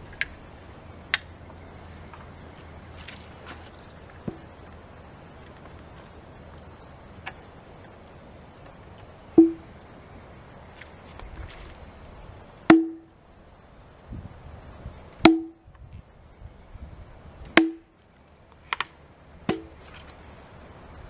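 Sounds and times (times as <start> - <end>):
hatchet chopping wood: 12.7 - 13.1, 15.2 - 15.6, 17.5 - 17.9, 19.5 - 19.8.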